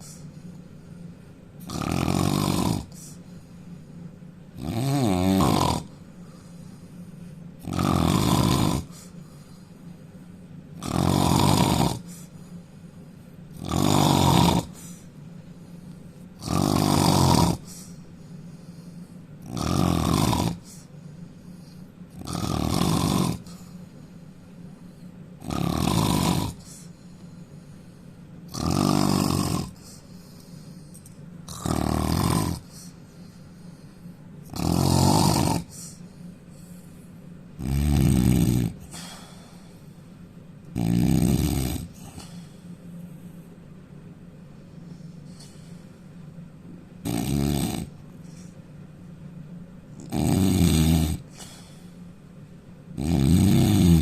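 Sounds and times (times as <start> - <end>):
man snoring loudly: 1.6 - 3.2, 4.6 - 6.0, 7.6 - 9.1, 10.8 - 12.2, 13.6 - 14.9, 16.4 - 17.8, 19.4 - 20.9, 22.2 - 23.6, 25.4 - 26.9, 28.5 - 30.0, 31.5 - 33.0, 34.5 - 36.0, 37.6 - 38.9, 40.8 - 42.2, 47.0 - 48.0, 50.0 - 51.4, 53.0 - 54.0.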